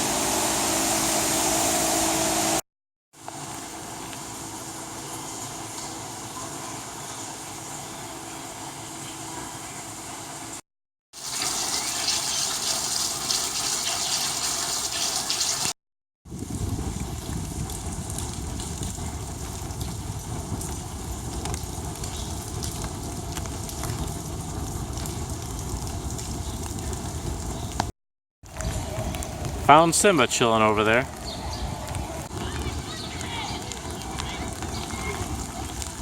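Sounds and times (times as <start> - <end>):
rushing water: 11.2 - 15.8.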